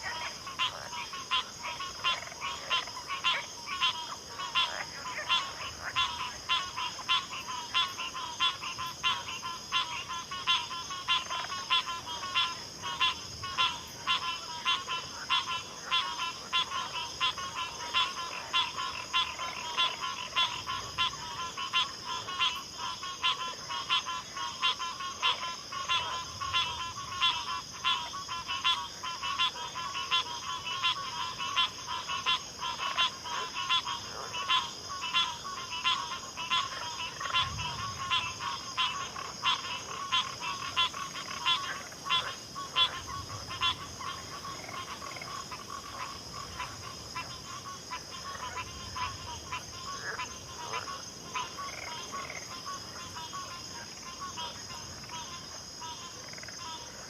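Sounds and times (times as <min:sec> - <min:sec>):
frogs calling: 0:00.0 - 0:57.0.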